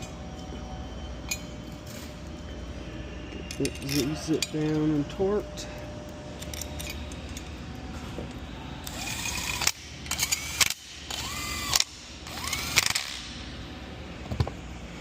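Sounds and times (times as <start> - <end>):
cordless power tool whining: 11.1 - 13.0.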